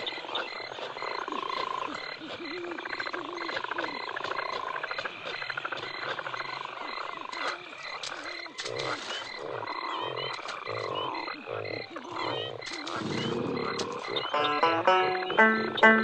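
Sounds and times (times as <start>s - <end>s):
frogs croaking: 0.0s - 16.0s
pulsing high chirp: 14.2s - 16.0s.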